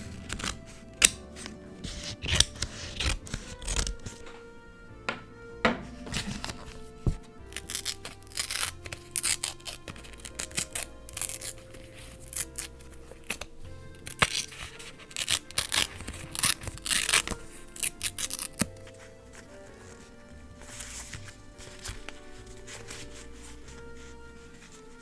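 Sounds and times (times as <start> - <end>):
paper snips and rustles: 0.0 - 4.5, 6.0 - 25.0
background music with sustained notes: 0.0 - 25.0.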